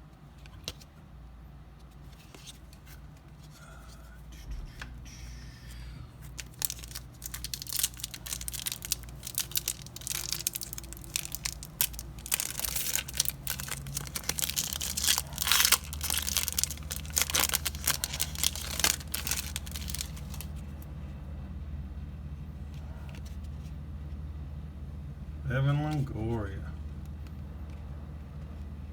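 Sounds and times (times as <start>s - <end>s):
wrappers tearing and crinkling: 6.2s - 20.6s.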